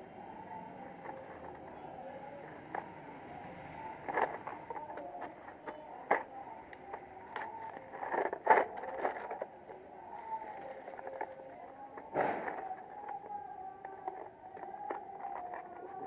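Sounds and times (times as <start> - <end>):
plastic case clicks and rustles: 4.1 - 16.0.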